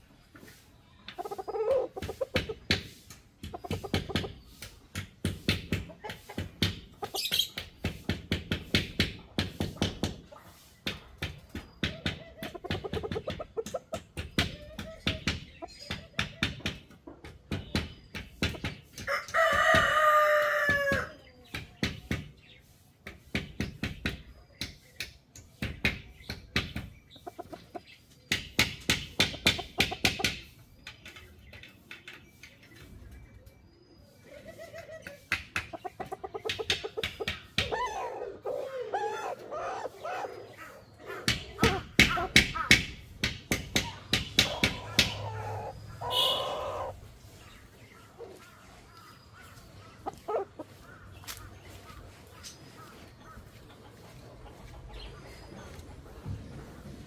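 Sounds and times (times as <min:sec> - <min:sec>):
chickens clucking: 0:00.0 - 0:57.0
rooster crowing: 0:19.1 - 0:21.1.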